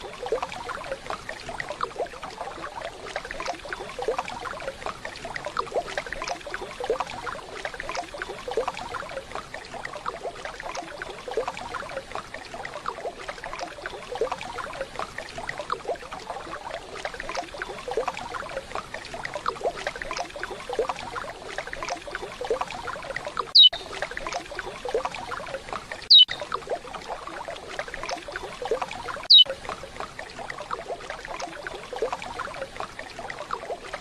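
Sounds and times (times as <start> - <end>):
bird call whistle: 23.6 - 23.9, 26.1 - 26.4, 29.3 - 29.5.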